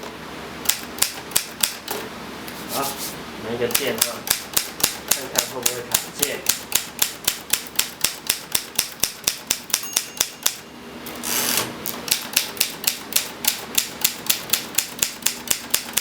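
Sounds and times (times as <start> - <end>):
typewriter keys clacking: 12.1 - 16.0.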